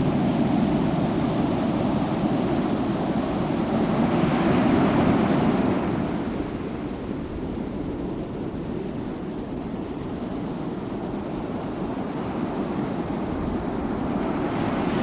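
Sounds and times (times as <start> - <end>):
sea waves washing on shore: 0.0 - 15.0.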